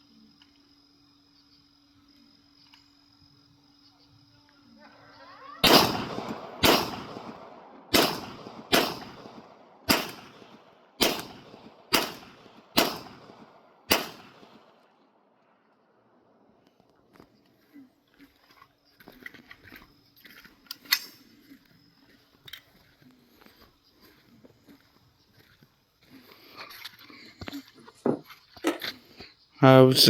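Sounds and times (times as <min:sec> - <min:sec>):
echoing gunshots: 0:05.5 - 0:14.8.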